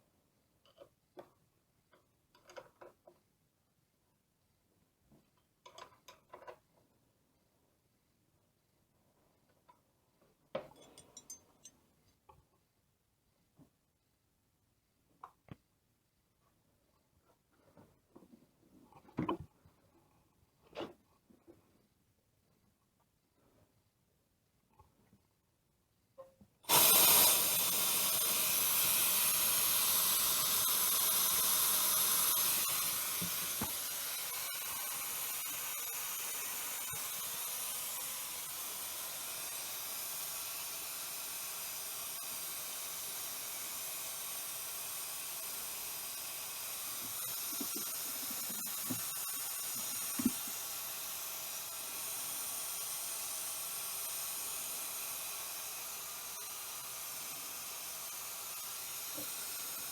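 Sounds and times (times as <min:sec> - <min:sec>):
compressed air hissing: 0:26.6 - 0:59.9.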